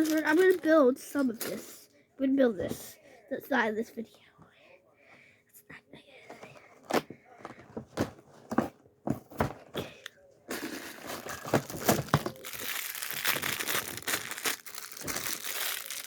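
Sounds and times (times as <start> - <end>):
packaging crinkling and tearing: 0.0 - 0.7, 10.6 - 16.0.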